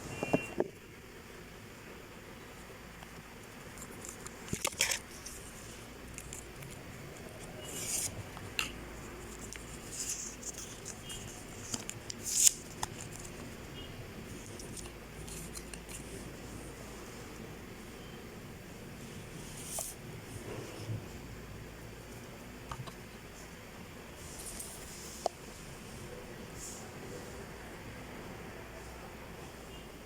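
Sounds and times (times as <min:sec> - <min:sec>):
low steady background noise: 0:00.0 - 0:30.0
handling clicks and scratches: 0:03.0 - 0:13.5, 0:14.3 - 0:16.2.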